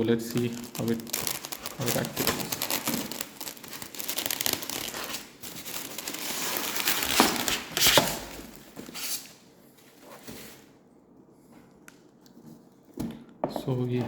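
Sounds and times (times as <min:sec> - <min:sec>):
packaging crinkled and torn: 0:00.0 - 0:09.2.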